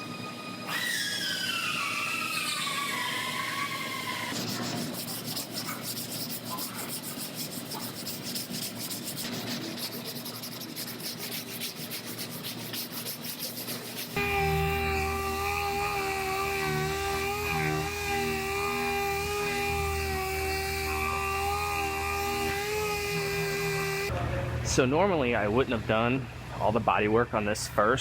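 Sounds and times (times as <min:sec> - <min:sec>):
sanding tool whine: 0:00.0 - 0:24.1
sanding strokes: 0:04.0 - 0:24.1.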